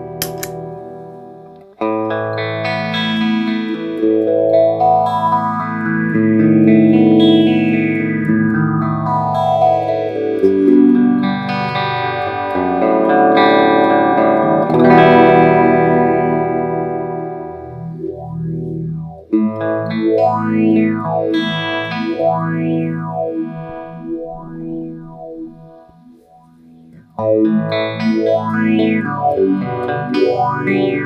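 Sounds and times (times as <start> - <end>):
electric guitar chord with phaser: 0.0 - 31.0.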